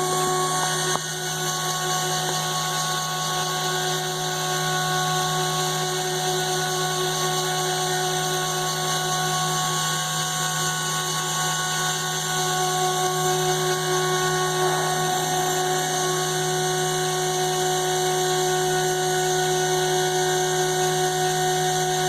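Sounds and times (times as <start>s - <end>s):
router spindle whining: 0.0s - 22.0s.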